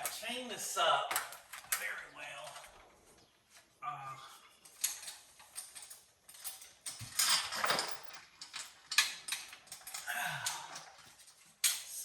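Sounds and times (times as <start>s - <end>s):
metal chain clinking and rattling: 4.6s - 12.0s.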